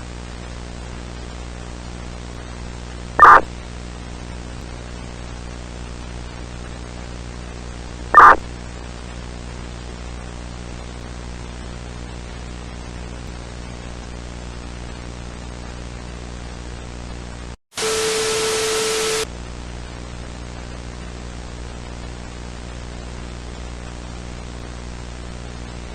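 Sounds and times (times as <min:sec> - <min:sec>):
broadcast hiss: 0:03.2 - 0:03.5, 0:08.2 - 0:08.5, 0:17.8 - 0:19.3
static burst with steady tone: 0:03.2 - 0:03.7, 0:06.7 - 0:09.0, 0:17.7 - 0:19.3.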